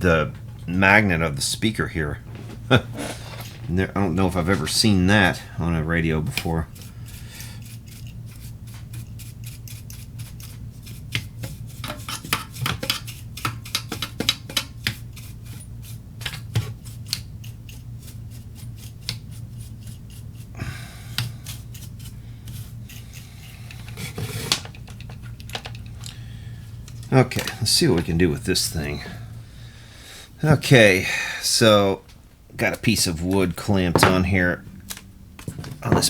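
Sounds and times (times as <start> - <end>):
steady low hum: 0.0 - 36.0
small parts and tools clicking: 21.1 - 26.2.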